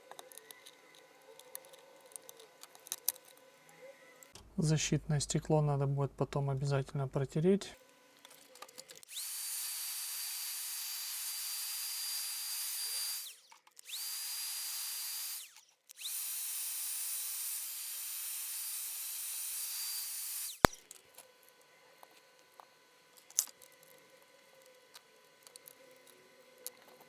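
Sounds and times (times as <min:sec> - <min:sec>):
high-speed electric tool whining: 0:00.0 - 0:04.4, 0:07.8 - 0:27.0
sharp click: 0:20.6 - 0:20.9.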